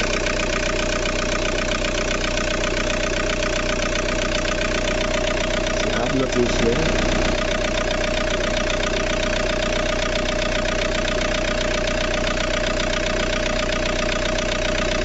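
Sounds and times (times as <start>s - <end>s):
car engine idling: 0.0s - 15.0s
steady whining tone: 5.8s - 8.1s.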